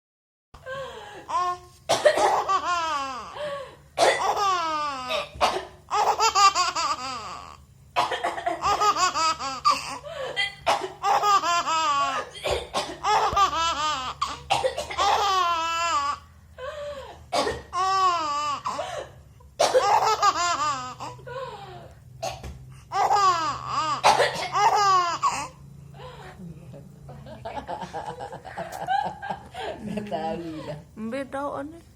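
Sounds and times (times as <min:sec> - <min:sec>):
person coughing: 0:01.9 - 0:02.5, 0:04.0 - 0:04.4, 0:05.1 - 0:05.8, 0:08.0 - 0:08.6, 0:10.4 - 0:11.0, 0:12.1 - 0:13.3, 0:14.2 - 0:15.2, 0:17.3 - 0:17.8, 0:18.7 - 0:20.0, 0:24.0 - 0:24.8
baby laughing: 0:04.2 - 0:05.3, 0:05.9 - 0:16.2, 0:19.7 - 0:21.2, 0:22.9 - 0:25.6.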